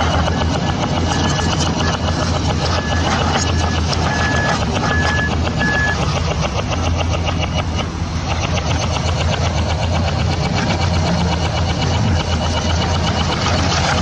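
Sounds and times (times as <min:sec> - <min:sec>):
warning alarm beeping: 0:00.0 - 0:06.1
excavator running: 0:00.0 - 0:14.0.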